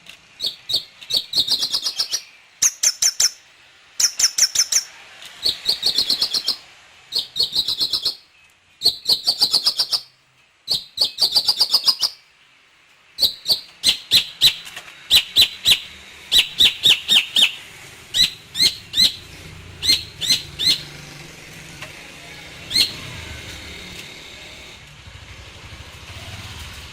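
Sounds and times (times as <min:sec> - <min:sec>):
bird singing high rapid notes: 0:00.4 - 0:03.4, 0:04.0 - 0:12.5, 0:13.1 - 0:21.0, 0:22.6 - 0:23.6.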